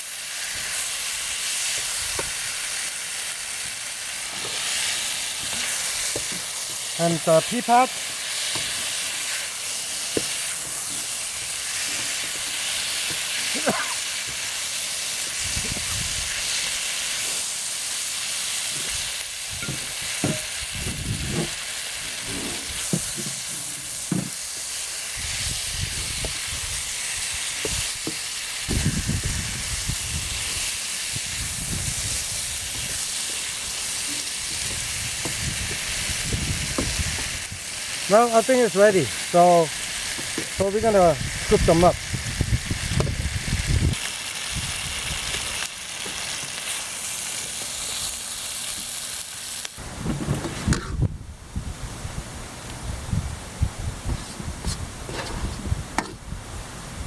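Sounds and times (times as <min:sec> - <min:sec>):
sauce sizzling in a pan: 0:00.0 - 0:49.8
utensil scraping a pan: 0:22.2 - 0:24.3.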